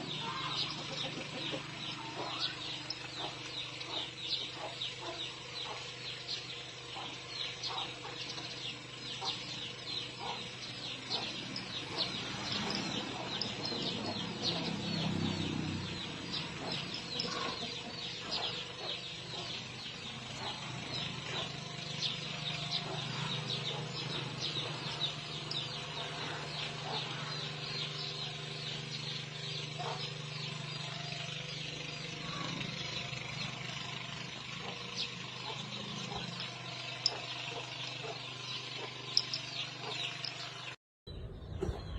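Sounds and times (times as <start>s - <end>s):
chickens clucking: 0.0s - 6.0s, 6.6s - 27.6s, 29.8s - 30.5s
birds chirping rapidly: 0.0s - 41.9s.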